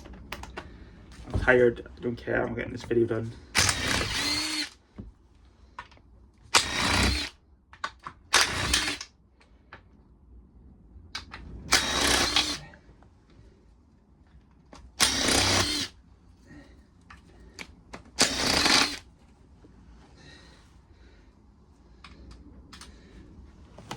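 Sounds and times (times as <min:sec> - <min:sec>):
power driver whirring: 0:03.5 - 0:04.8, 0:06.5 - 0:07.3, 0:08.3 - 0:09.1, 0:11.7 - 0:12.7, 0:15.0 - 0:16.0, 0:18.1 - 0:19.1.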